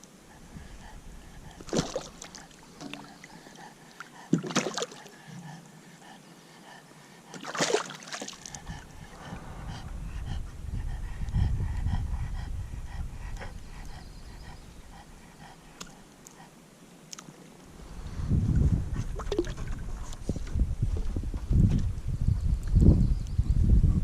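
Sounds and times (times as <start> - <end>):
dog panting and snorting: 0.3 - 16.6.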